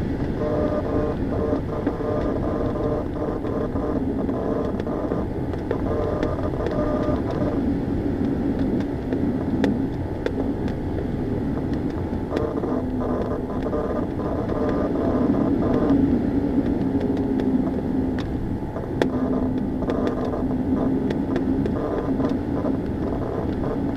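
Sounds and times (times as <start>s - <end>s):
low hum: 0.0s - 23.9s
sharp clicks: 0.4s - 7.6s, 8.2s - 16.0s, 16.6s - 23.9s.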